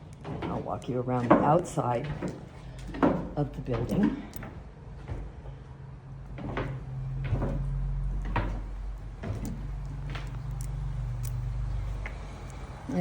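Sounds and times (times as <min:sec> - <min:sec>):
footsteps: 0:00.0 - 0:13.0
steady low hum: 0:00.0 - 0:13.0.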